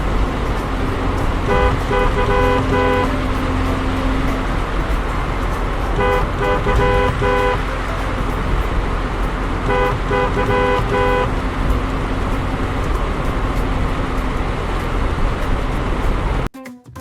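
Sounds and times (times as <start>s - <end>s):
level crossing bell ringing: 0.0s - 12.8s
steady low rumble: 0.0s - 16.5s.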